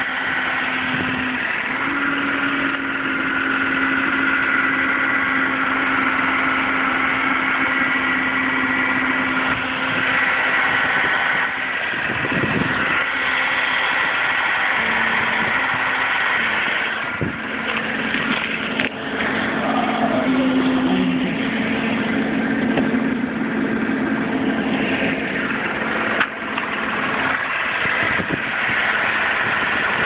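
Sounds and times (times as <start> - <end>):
car engine humming: 0.0 - 30.0.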